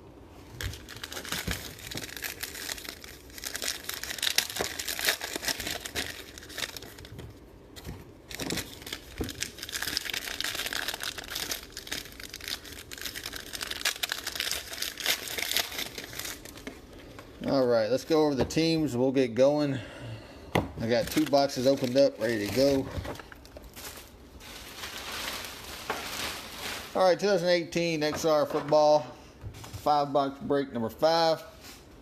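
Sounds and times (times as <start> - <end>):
plastic wrapping crinkling: 0.5 - 17.7, 20.8 - 27.4.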